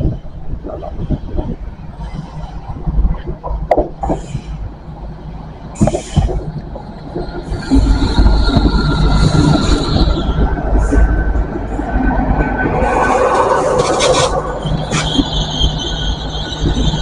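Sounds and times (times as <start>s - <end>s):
train wheels rumbling on track: 0.0s - 17.0s
high-pitched wheel squeal: 7.3s - 17.0s.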